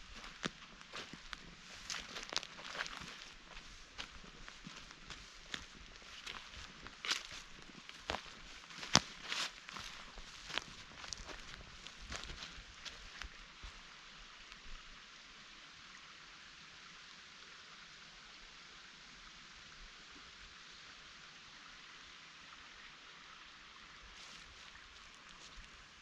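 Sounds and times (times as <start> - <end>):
light footsteps on path: 0.0 - 13.8, 24.2 - 25.9
forest ambience hiss: 0.0 - 26.0.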